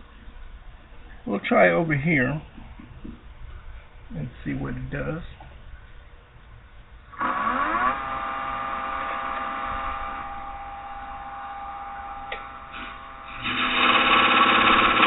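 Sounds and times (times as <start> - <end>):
lathe tool scraping wood: 12.8 - 15.0.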